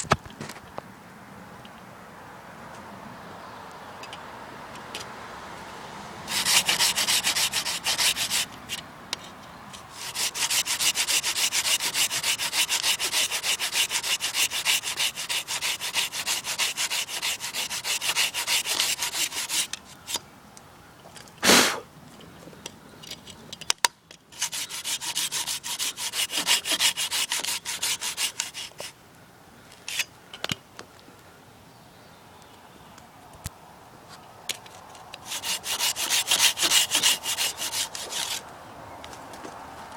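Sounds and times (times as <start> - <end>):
hand saw cutting wood: 6.3 - 8.8, 9.8 - 20.2, 24.3 - 29.0, 35.2 - 38.4.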